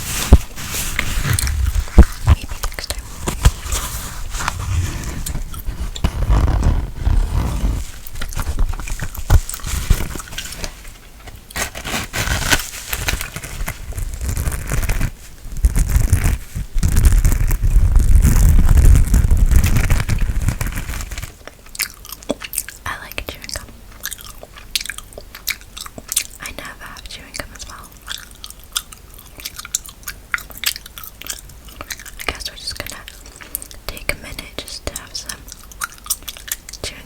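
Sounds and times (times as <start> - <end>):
brush scratching on microphone: 0.0 - 10.6, 11.7 - 21.3
low rumble of mic rubbing: 0.0 - 10.8, 11.8 - 21.3.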